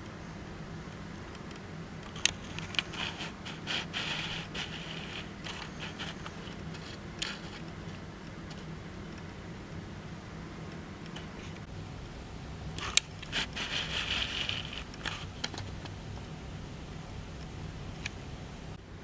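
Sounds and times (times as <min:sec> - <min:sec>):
steady low hum: 0:00.0 - 0:19.0
scraping and rustling: 0:02.0 - 0:08.7, 0:12.8 - 0:16.3.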